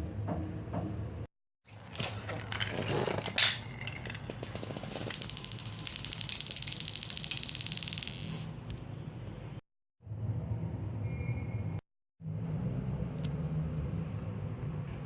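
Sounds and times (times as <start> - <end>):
marbles rolling on a track: 3.1 - 8.5.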